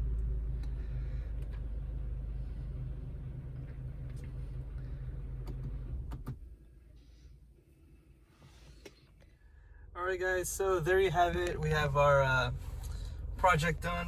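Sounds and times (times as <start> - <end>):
car engine idling: 0.0 - 7.6, 9.2 - 14.0
interior control clicks: 3.6 - 6.4.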